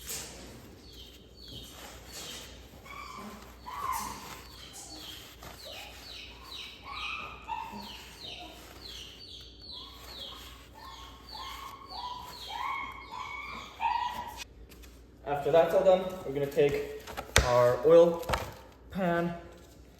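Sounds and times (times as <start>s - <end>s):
paper towel squeaking: 0.0s - 14.5s.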